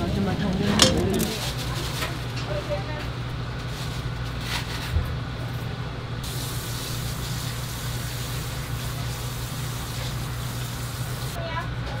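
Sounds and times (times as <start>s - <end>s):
spraying hiss: 6.2s - 11.4s.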